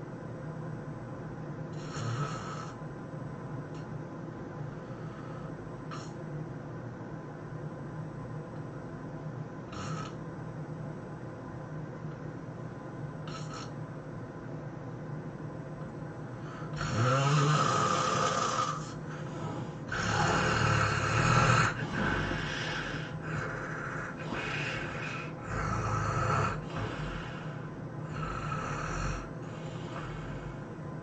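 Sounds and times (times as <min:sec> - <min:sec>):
person snoring heavily: 0:01.8 - 0:02.8, 0:09.7 - 0:10.2, 0:13.3 - 0:13.7, 0:16.5 - 0:30.6.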